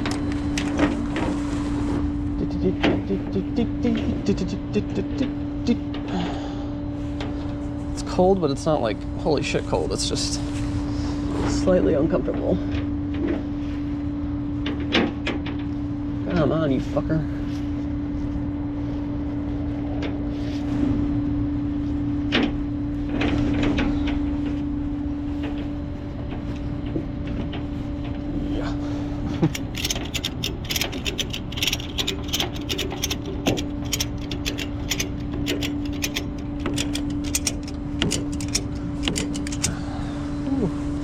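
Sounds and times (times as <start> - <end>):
vehicle engine humming: 2.0 - 5.9, 29.1 - 40.4
sharp clicks and rattles: 29.4 - 39.8.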